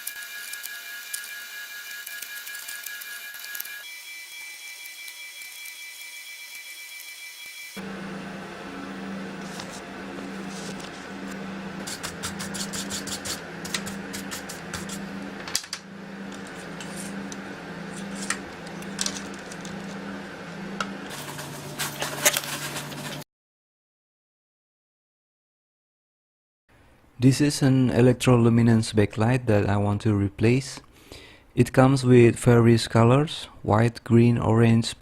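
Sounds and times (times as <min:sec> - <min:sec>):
pulsing low hum: 0:07.8 - 0:21.1.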